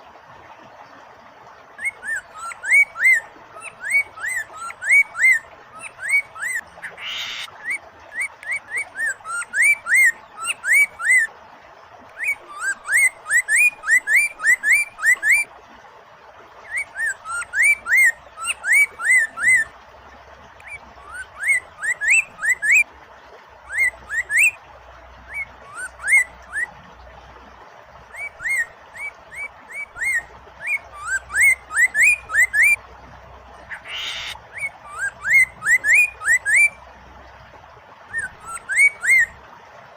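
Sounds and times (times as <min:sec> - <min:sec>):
flowing water: 0:00.0 - 0:39.9
bird singing whistled notes: 0:01.8 - 0:11.3, 0:12.2 - 0:15.5, 0:16.7 - 0:19.7, 0:20.6 - 0:22.8, 0:23.7 - 0:24.6, 0:25.3 - 0:26.7, 0:28.1 - 0:32.8, 0:33.8 - 0:36.8, 0:38.1 - 0:39.4.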